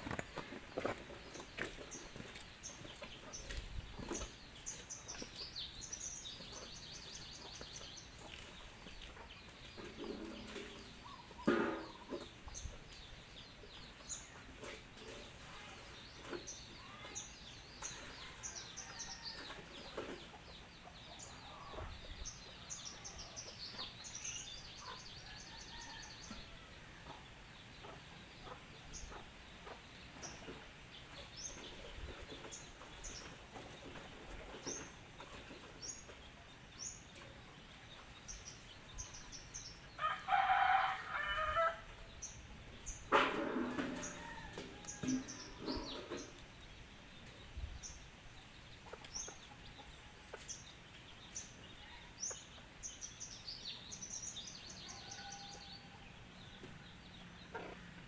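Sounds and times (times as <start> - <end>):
birds chirping and trilling: 0.0 - 58.0.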